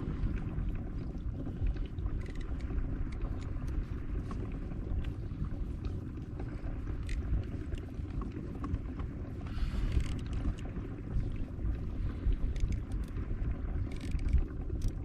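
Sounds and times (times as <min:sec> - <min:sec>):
water against kayak hull: 0:00.0 - 0:15.0
wind rumble on microphone: 0:00.0 - 0:15.0
small clicks: 0:02.1 - 0:03.8, 0:07.0 - 0:08.8, 0:09.8 - 0:10.7, 0:12.4 - 0:13.2, 0:13.8 - 0:15.0.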